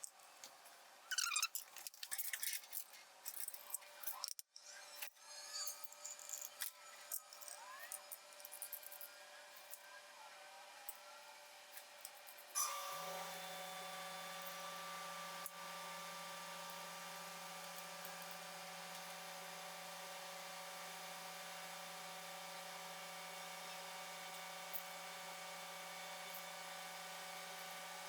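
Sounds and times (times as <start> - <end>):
electric motor humming: 12.6 - 28.0.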